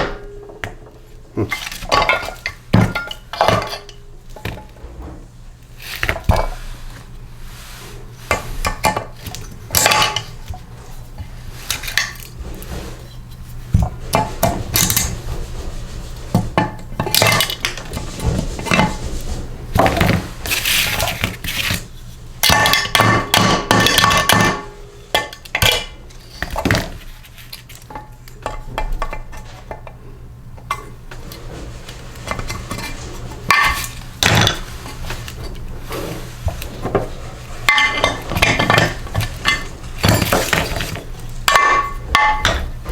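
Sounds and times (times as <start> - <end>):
tools and metal parts clinking: 37.7 - 42.9.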